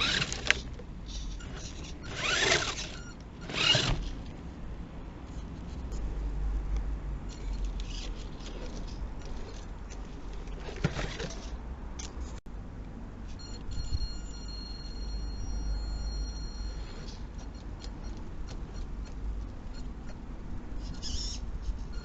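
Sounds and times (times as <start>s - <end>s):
toy car motor whining: 0.0s - 4.2s, 7.4s - 9.6s, 13.5s - 18.9s, 20.8s - 22.0s.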